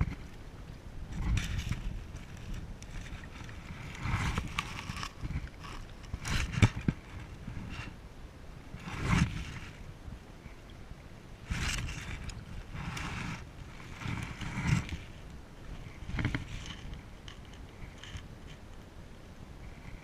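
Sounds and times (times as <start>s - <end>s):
water swishing and splashing: 0.0s - 8.0s, 8.6s - 18.6s
knocks and scrapes on kayak hull: 1.1s - 8.0s, 8.8s - 9.8s, 11.5s - 15.2s, 15.8s - 18.6s.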